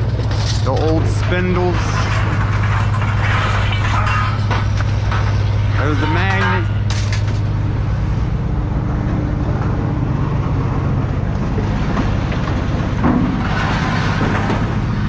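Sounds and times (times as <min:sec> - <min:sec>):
engine humming: 0:00.0 - 0:15.0.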